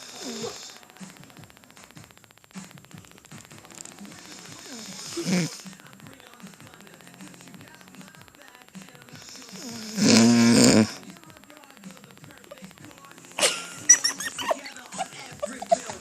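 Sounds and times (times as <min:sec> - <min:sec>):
woman snoring: 0:00.0 - 0:01.4, 0:03.0 - 0:05.8, 0:09.1 - 0:11.1.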